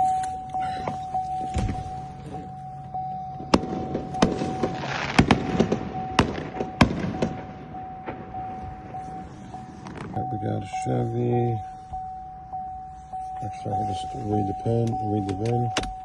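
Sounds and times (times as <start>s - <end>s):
high-pitched tone: 0.0s - 16.0s
fireworks bangs and crackling: 3.4s - 10.5s.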